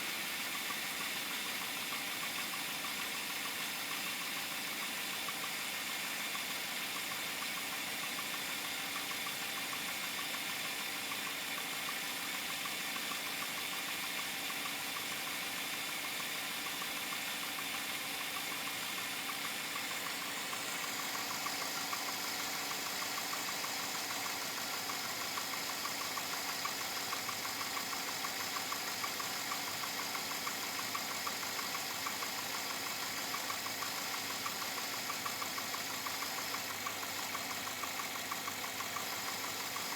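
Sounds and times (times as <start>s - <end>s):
engine idling with knocking tick: 0.0s - 39.9s.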